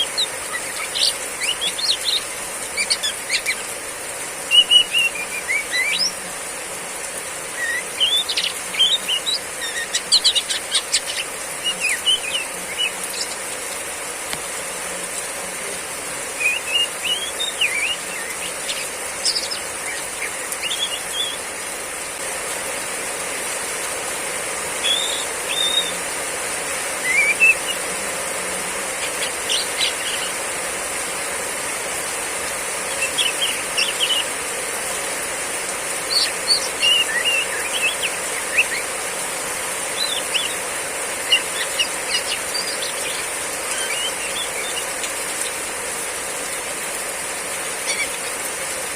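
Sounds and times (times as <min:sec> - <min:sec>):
bird chirping calls: 0:00.0 - 0:06.3, 0:07.5 - 0:13.7, 0:16.3 - 0:21.5, 0:24.8 - 0:26.1, 0:27.0 - 0:28.0, 0:28.9 - 0:30.5, 0:32.8 - 0:34.4, 0:36.0 - 0:39.0, 0:39.8 - 0:45.6, 0:47.7 - 0:48.5
heavy rain hissing: 0:00.0 - 0:48.9.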